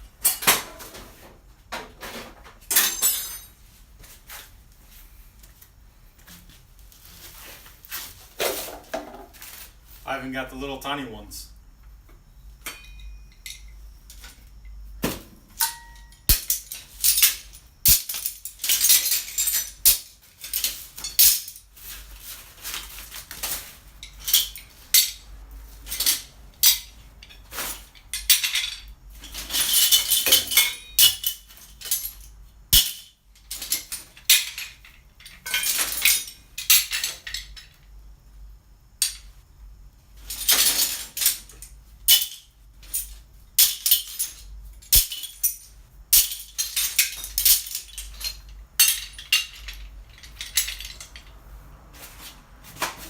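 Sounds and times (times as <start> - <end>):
metal clamps clanking: 12.6 - 13.7.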